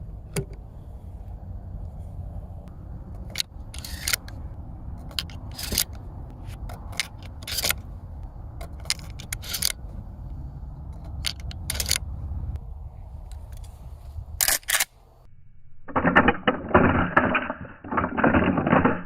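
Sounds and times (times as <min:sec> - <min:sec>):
low rumble: 0:00.0 - 0:18.2
shotgun parts clacking and sliding: 0:03.1 - 0:08.0, 0:08.6 - 0:10.0, 0:10.9 - 0:12.1, 0:13.2 - 0:15.0, 0:15.9 - 0:19.0.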